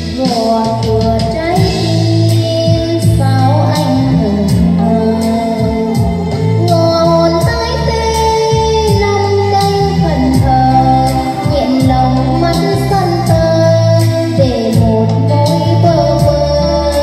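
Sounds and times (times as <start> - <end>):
song with drum beat and bass: 0.0 - 17.0.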